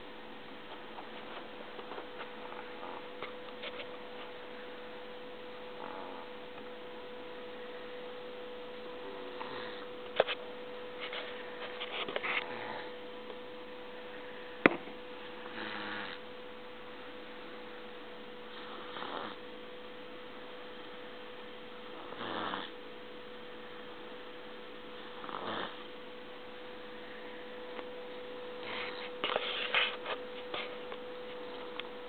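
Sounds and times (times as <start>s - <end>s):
electrical hum: 0.0s - 32.0s
pet snoring: 2.2s - 3.8s, 5.7s - 6.4s, 9.2s - 10.4s, 11.0s - 13.0s, 15.4s - 16.3s, 18.5s - 19.4s, 21.9s - 22.8s, 25.0s - 25.9s, 28.6s - 30.0s.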